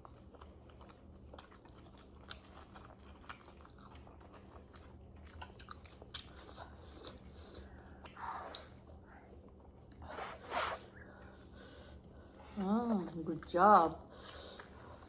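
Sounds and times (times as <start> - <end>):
chewing and biting food: 0.0 - 10.1, 13.1 - 15.0.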